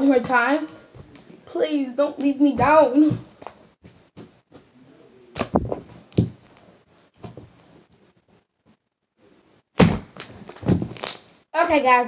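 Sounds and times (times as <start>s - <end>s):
slime crackling and squelching: 9.8s - 11.3s
sharp slime snap: 10.9s - 11.3s.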